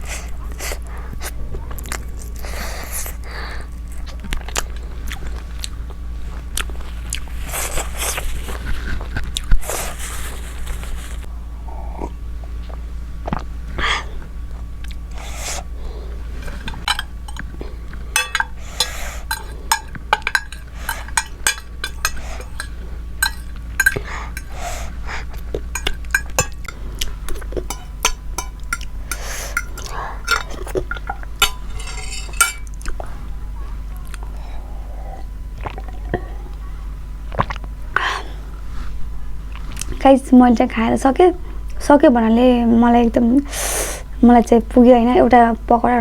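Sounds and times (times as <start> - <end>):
cutlery clinking on dishes: 16.4 - 17.5, 18.2 - 24.8, 25.8 - 32.8.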